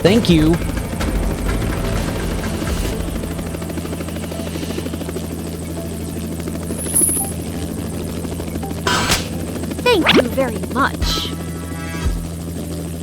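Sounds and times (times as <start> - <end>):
small motor buzzing hum: 4.0 - 13.0
high-pitched tone: 6.7 - 9.0.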